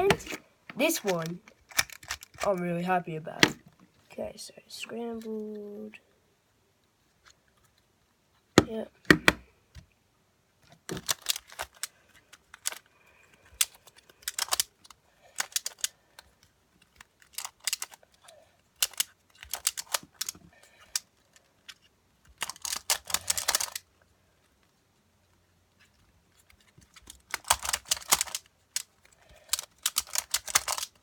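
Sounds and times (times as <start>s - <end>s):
puzzle cube plastic clicking: 0.0s - 2.6s, 8.6s - 9.5s, 10.7s - 24.0s, 26.4s - 31.0s.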